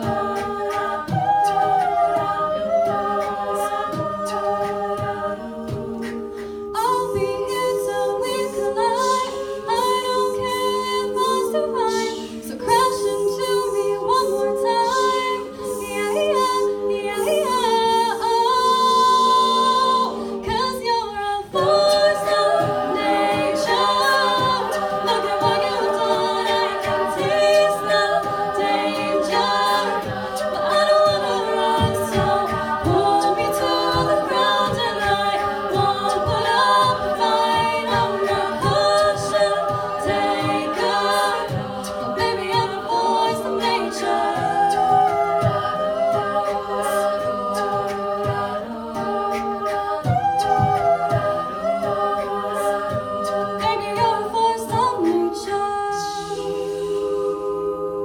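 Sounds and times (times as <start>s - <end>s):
women singing a cappella harmony: 0.0s - 58.0s
steady beat: 21.5s - 55.2s.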